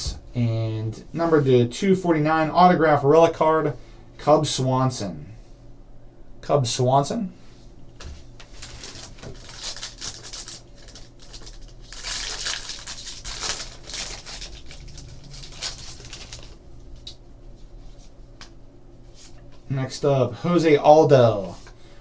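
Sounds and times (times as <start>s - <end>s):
wrapper crinkling and tearing: 8.4s - 17.2s.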